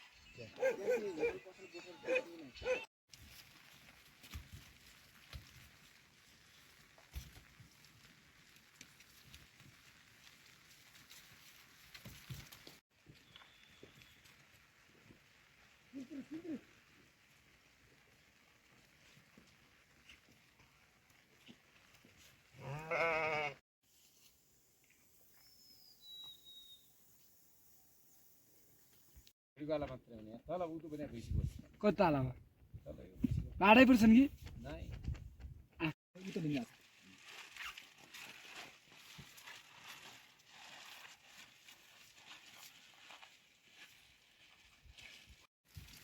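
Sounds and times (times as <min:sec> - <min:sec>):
goat bleating: 0:22.6 - 0:23.6
faint high whistles: 0:25.3 - 0:27.0.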